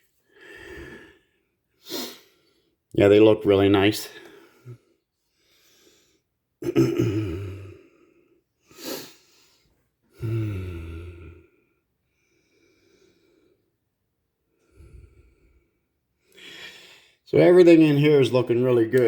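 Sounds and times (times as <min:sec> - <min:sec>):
man's sharp sniff: 0:01.8 - 0:02.4, 0:08.7 - 0:09.7.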